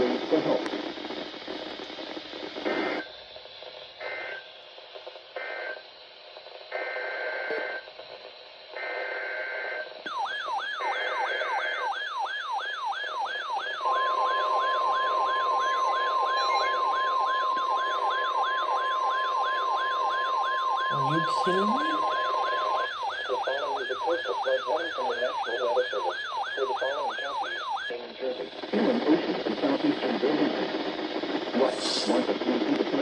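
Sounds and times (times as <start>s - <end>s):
steady warning alarm tone: 8.8s - 28.0s
rising and falling siren alarm: 10.1s - 27.9s.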